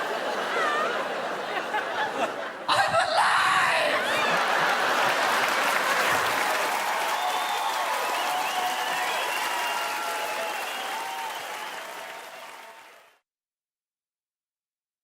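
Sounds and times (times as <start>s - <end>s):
audience applause: 3.8s - 13.2s.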